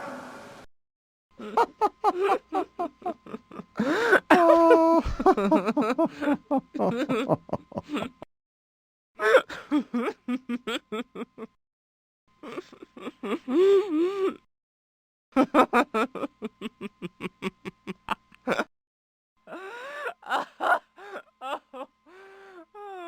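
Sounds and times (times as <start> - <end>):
person laughing: 1.4 - 8.3, 9.2 - 11.6, 12.4 - 14.5, 15.4 - 18.7, 19.5 - 23.0.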